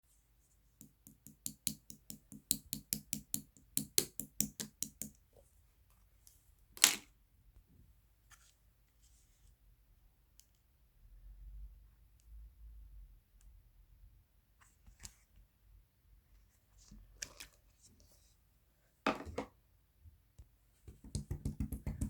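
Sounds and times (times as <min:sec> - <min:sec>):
quick taps on jelly: 0:20.9 - 0:22.0.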